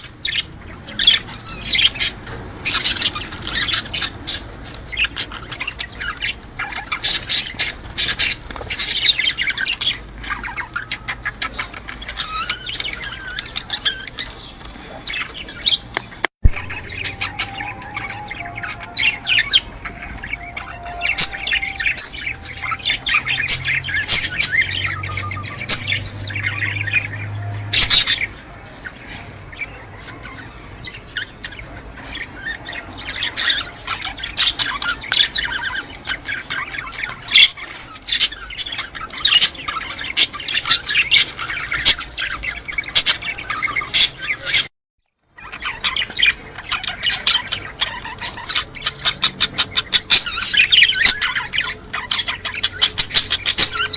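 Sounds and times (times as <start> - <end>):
small birds chirping and twittering: 0.0 - 53.9.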